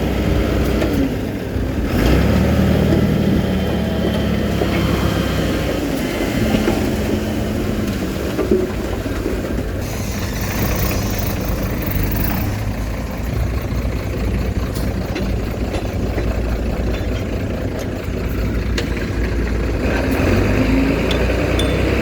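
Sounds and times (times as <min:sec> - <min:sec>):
heavy diesel machinery running: 0:00.0 - 0:22.0
sharp metallic clanks: 0:21.0 - 0:22.0.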